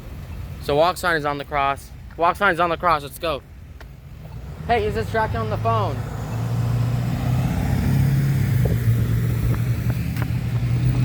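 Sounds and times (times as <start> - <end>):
vehicle engine humming: 3.0 - 11.0.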